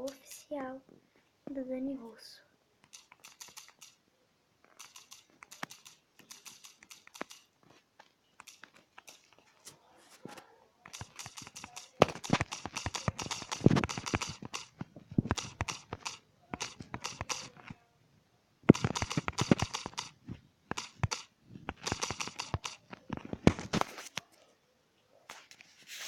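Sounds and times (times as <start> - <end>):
typing on phone keyboard: 2.8 - 4.0, 4.6 - 7.8, 8.4 - 9.5, 10.8 - 17.8, 18.7 - 23.9.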